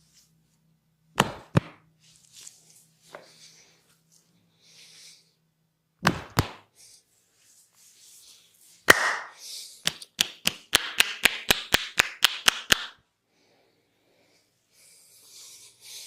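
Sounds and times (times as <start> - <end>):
hand slaps on body: 1.2 - 1.8, 6.0 - 6.7, 8.9 - 13.0.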